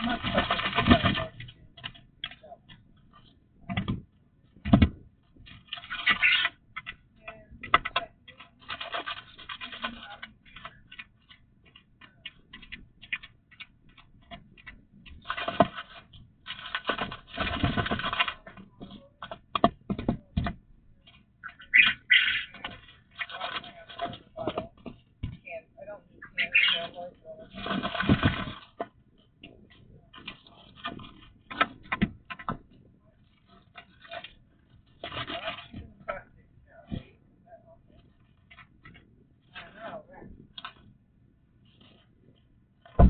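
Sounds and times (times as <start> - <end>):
irregular taps and clicks: 0.0 - 21.7
rustling: 0.0 - 43.0.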